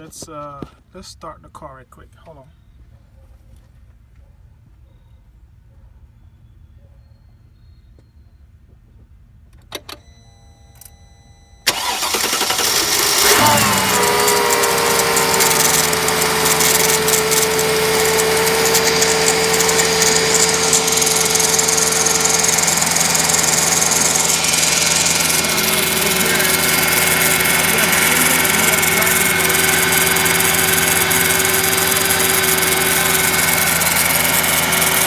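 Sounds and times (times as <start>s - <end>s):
car engine starting and idling: 11.7s - 35.0s
engine belt grinding noise: 11.7s - 35.0s.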